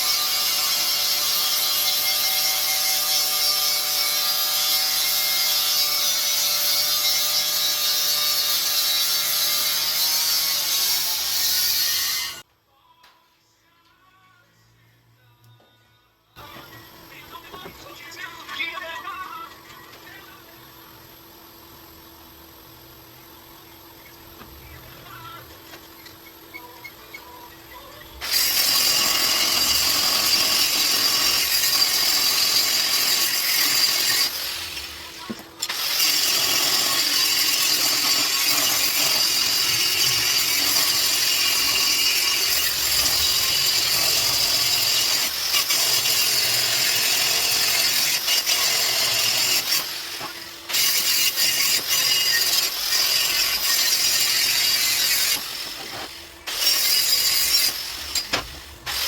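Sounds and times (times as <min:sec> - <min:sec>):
angle grinder grinding metal: 0:00.0 - 0:12.4, 0:25.9 - 0:59.0.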